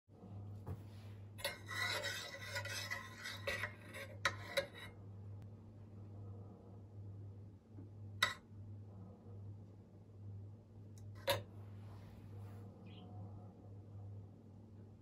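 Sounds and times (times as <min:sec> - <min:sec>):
steady low hum: 0:00.1 - 0:15.0
rasping scraping in kitchen: 0:01.0 - 0:05.0.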